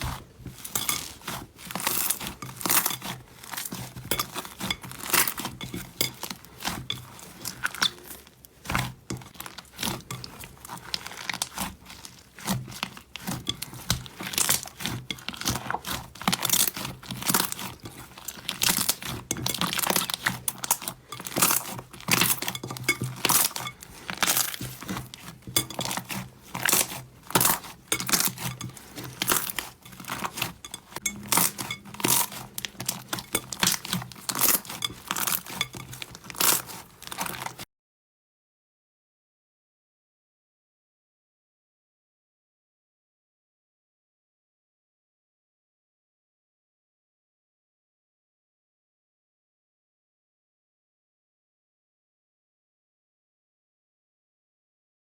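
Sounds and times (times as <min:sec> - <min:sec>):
slime crackling and popping: 0:08.8 - 0:37.6.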